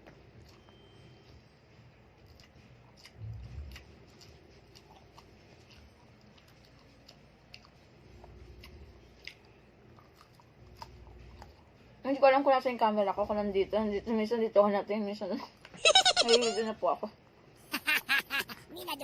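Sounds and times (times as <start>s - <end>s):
chewing: 0.0s - 12.0s.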